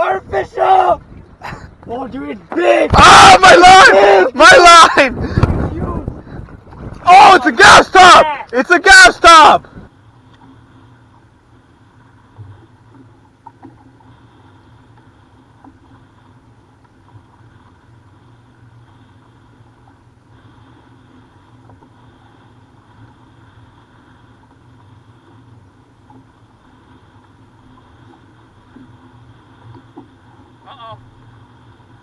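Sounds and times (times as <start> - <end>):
water lapping against kayak: 0.0 - 3.0, 4.2 - 7.6.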